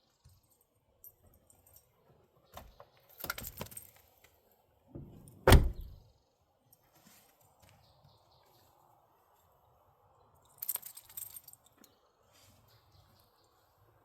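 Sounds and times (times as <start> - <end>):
heavy thud: 5.5 - 6.0
metallic jingling and clattering: 10.4 - 12.0.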